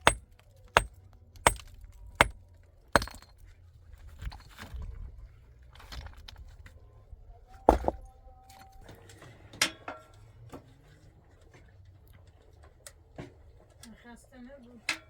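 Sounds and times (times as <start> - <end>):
hard objects clinking and knocking: 3.0 - 3.4, 7.7 - 8.0.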